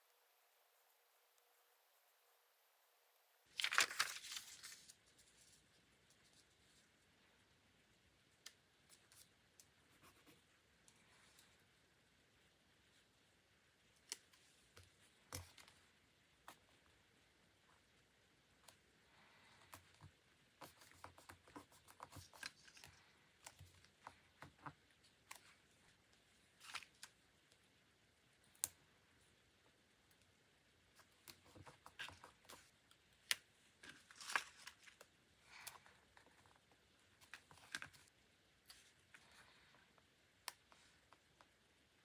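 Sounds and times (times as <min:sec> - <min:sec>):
paper and stationery handling: 0:03.5 - 0:07.0, 0:18.6 - 0:27.2, 0:30.9 - 0:41.6.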